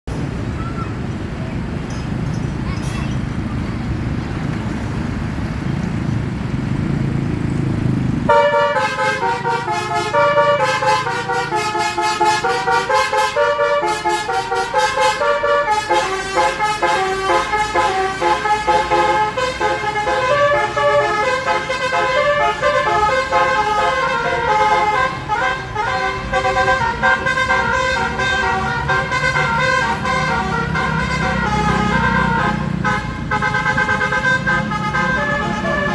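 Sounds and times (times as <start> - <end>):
bus engine rumble: 0.0 - 35.9
musical bus horn tune: 8.3 - 35.9.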